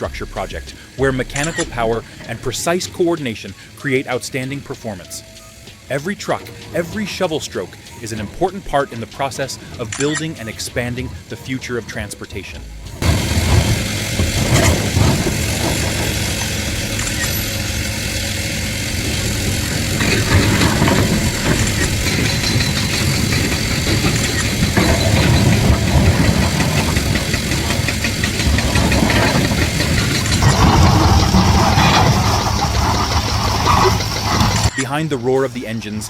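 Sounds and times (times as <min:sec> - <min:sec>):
diesel machinery running: 0:00.0 - 0:36.0.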